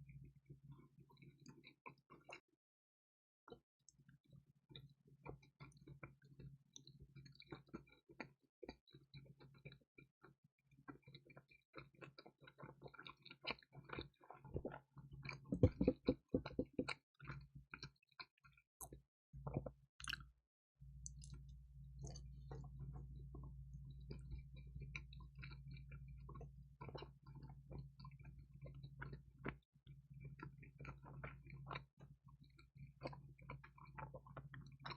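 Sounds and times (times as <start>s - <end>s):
chewing crispy pizza: 0.1s - 2.4s, 3.5s - 20.2s, 21.0s - 34.9s
steady low hum: 20.8s - 29.4s.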